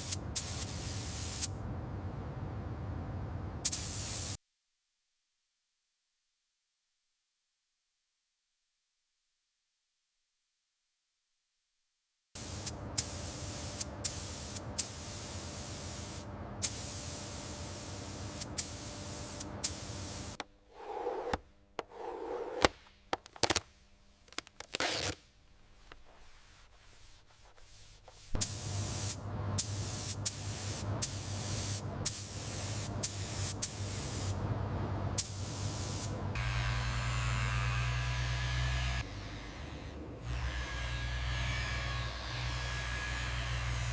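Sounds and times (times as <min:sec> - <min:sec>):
spray hissing: 0:28.1 - 0:34.4.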